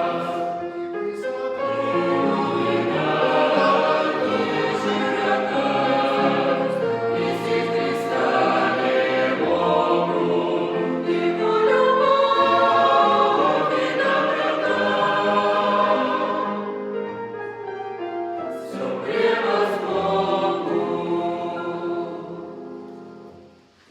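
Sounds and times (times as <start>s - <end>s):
choir singing: 0.0s - 23.9s.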